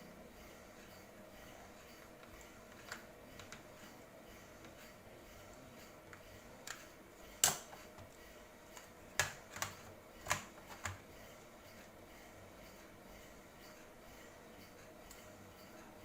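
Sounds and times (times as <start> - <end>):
laptop parts clicking and tapping: 7.4 - 8.1, 8.8 - 11.0.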